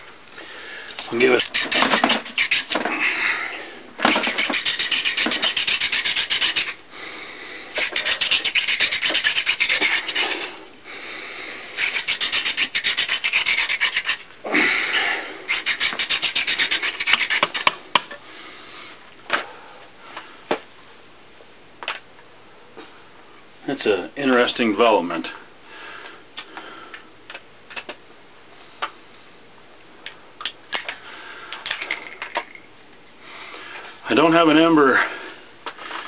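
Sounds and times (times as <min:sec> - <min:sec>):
wood-on-wood rubbing: 0:04.0 - 0:06.8, 0:07.8 - 0:10.5.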